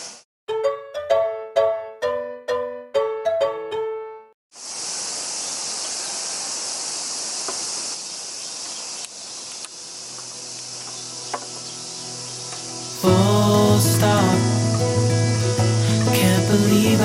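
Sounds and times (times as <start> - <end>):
insects chirring: 4.6 - 17.0
faint ticks: 9.0 - 11.0.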